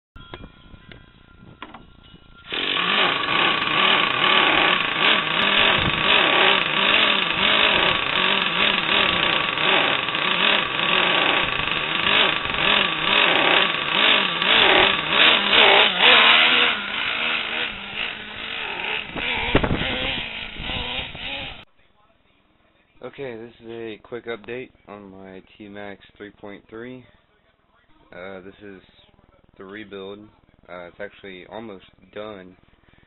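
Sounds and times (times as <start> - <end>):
small engine revving: 2.4 - 21.7.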